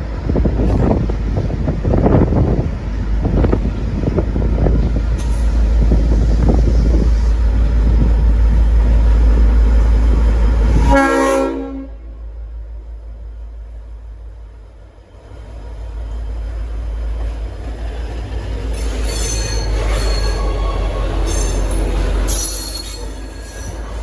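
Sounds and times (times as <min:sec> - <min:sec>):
diesel locomotive running: 0:00.0 - 0:24.0
locomotive horn chord blast: 0:10.8 - 0:12.2.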